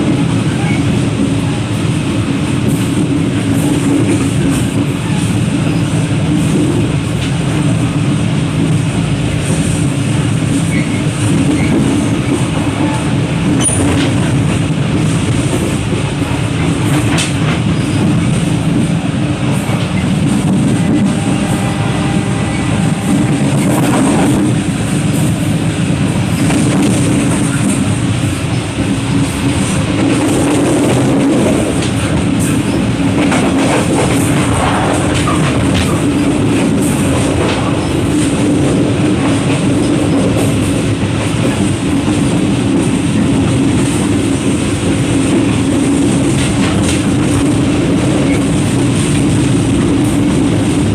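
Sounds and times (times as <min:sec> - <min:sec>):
train wheels rumbling on rails: 0:00.0 - 0:50.9.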